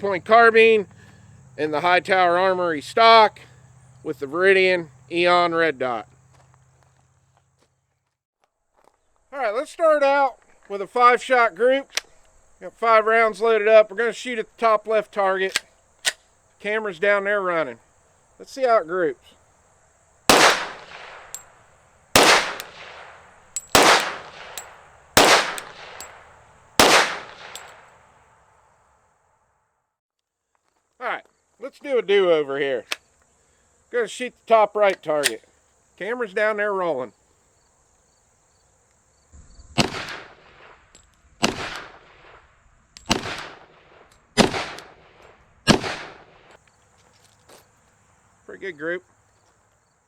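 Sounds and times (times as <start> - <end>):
pistol shots echoing: 20.3 - 28.0, 39.8 - 40.8, 41.4 - 42.4, 43.0 - 46.5.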